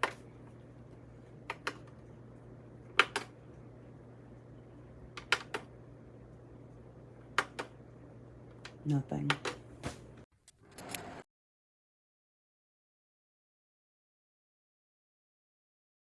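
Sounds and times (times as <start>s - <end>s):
faint low hum: 0.0s - 10.2s
fan control buttons clicking: 7.3s - 7.7s.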